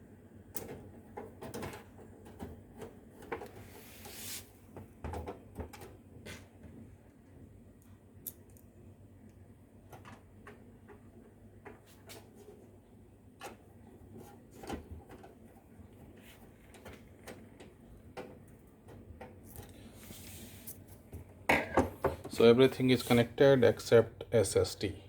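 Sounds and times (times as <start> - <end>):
clicks and knocks of computer parts: 0.5 - 3.6, 4.7 - 6.0, 16.7 - 19.8.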